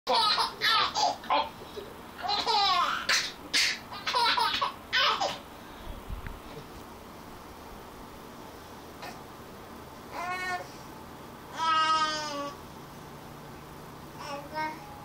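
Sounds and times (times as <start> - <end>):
baby laughing: 0.1 - 5.4.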